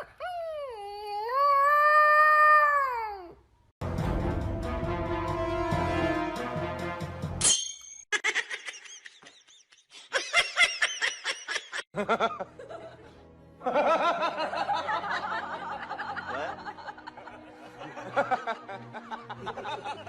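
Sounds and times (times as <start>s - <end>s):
music: 3.8s - 7.4s, 12.0s - 20.0s.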